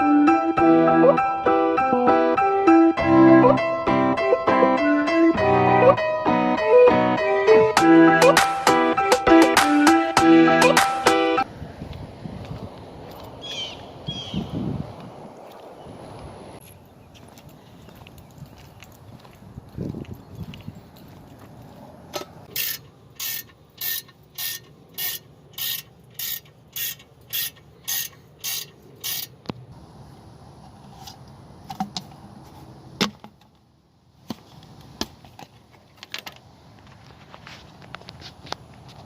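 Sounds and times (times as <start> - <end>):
ratchet wrench clicking: 22.5 - 29.4.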